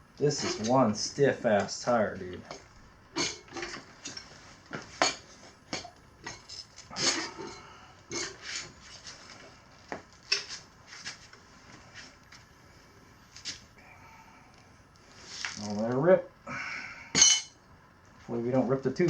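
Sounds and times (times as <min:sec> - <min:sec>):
tire levers clinking and scraping: 0:00.2 - 0:00.8, 0:02.4 - 0:09.4.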